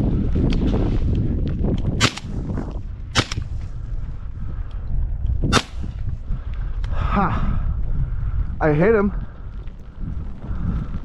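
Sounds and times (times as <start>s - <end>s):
wind rumbling on microphone: 0.0s - 11.0s
shotgun shots: 2.0s - 2.4s, 3.2s - 3.5s, 5.5s - 5.9s.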